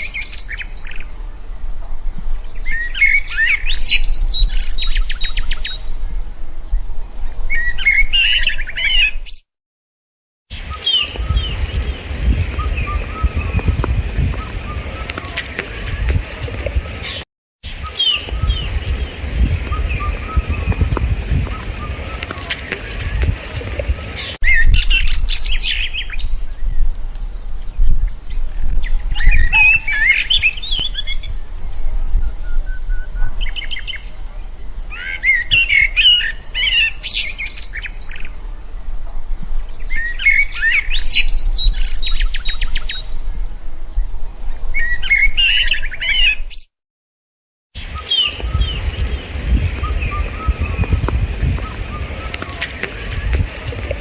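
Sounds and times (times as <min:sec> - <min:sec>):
songbird chirping: 0:10.5 - 0:24.4, 0:47.8 - 0:54.0
low rumble: 0:10.8 - 0:17.2, 0:17.8 - 0:24.4, 0:47.9 - 0:54.0.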